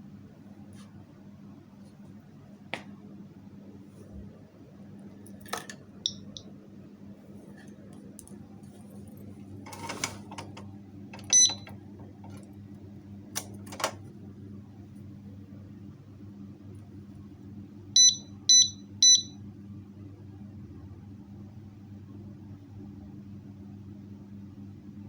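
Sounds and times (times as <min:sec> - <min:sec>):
loud electronic beep: 0:18.0 - 0:19.4.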